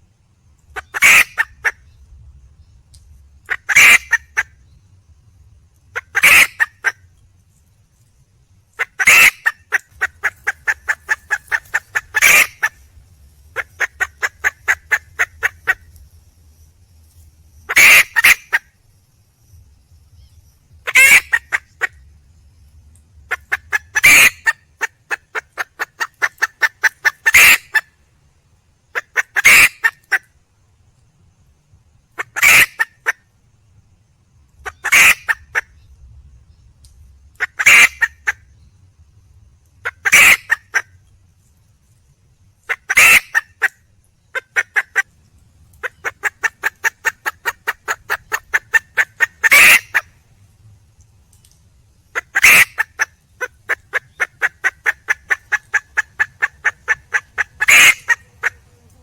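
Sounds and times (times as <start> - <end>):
hen clucking calls: 0.7 - 1.9, 3.4 - 4.5, 5.9 - 7.0, 8.8 - 12.8, 13.5 - 15.9, 17.7 - 18.6, 20.8 - 22.0, 23.3 - 27.9, 28.9 - 30.3, 32.2 - 33.2, 34.6 - 35.7, 37.4 - 38.4, 39.8 - 40.9, 42.7 - 45.1, 45.8 - 50.1, 52.1 - 59.0.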